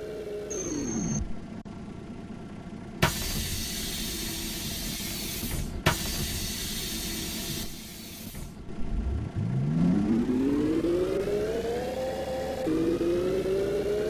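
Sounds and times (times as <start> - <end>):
bus drive whine: 0.0 - 14.0
bus air brake hiss: 3.0 - 8.6.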